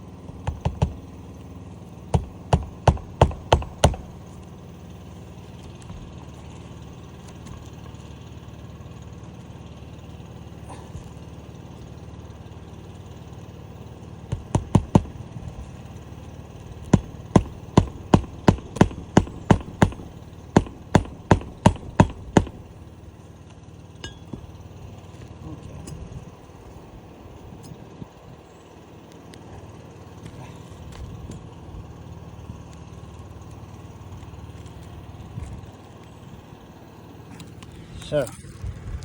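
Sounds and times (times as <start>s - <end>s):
steady low hum: 0.0s - 39.0s
hammer striking roof shingles: 0.4s - 1.2s, 2.1s - 4.2s, 14.3s - 15.3s, 16.8s - 23.0s.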